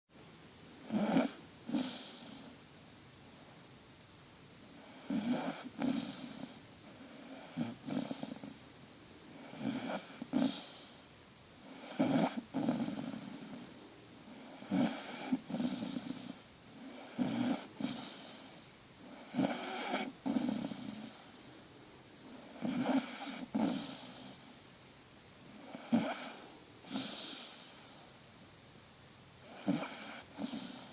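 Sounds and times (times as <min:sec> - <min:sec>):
puppy snoring: 0:00.8 - 0:02.7, 0:04.7 - 0:08.7, 0:09.3 - 0:21.6, 0:22.2 - 0:24.6, 0:25.5 - 0:28.2, 0:29.4 - 0:30.9.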